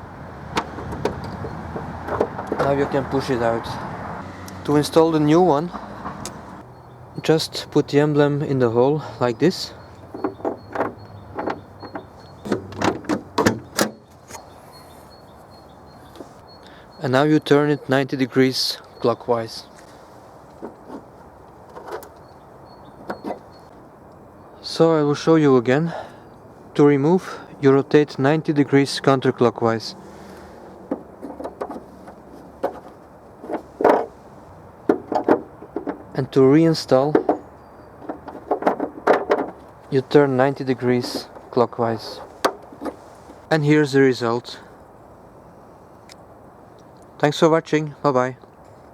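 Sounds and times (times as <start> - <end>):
small clicks and knocks: 9.9 - 14.4, 34.9 - 36.2.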